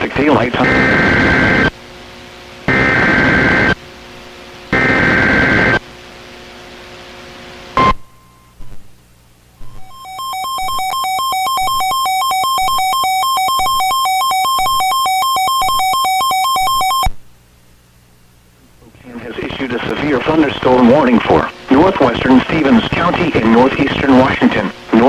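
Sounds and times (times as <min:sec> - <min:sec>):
buzzing data squawk: 0:02.7 - 0:03.8, 0:09.6 - 0:17.1.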